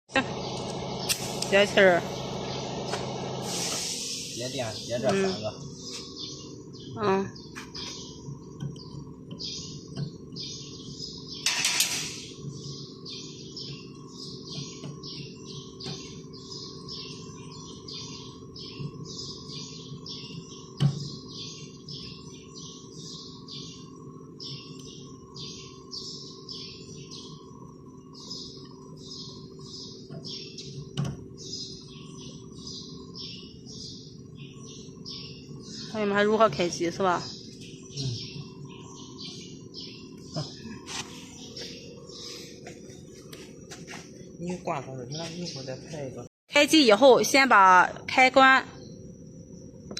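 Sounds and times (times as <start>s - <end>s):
small birds chirping: 0.1s - 49.9s
short hiss: 3.4s - 4.5s.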